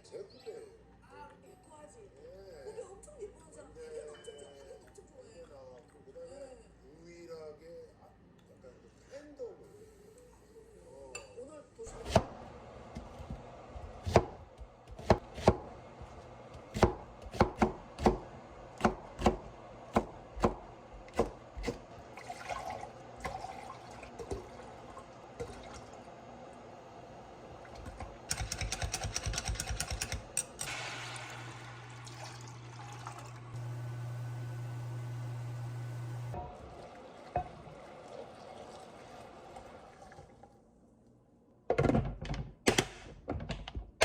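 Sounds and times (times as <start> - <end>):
knife chopping on cutting board: 13.0 - 21.8
liquid being poured: 21.8 - 26.2, 30.7 - 33.6, 36.4 - 40.7
electric hum with high whine: 31.2 - 36.6.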